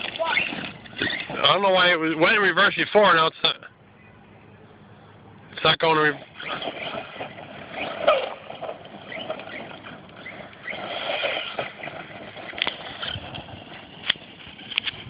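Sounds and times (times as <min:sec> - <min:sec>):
rc truck motor and tyres: 0:00.0 - 0:02.4, 0:05.6 - 0:15.0.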